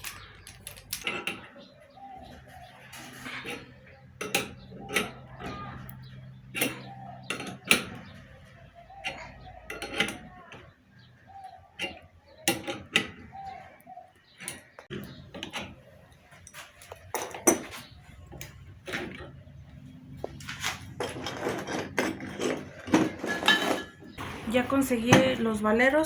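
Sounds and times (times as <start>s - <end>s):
hand tools clicking on metal: 0.0s - 1.6s.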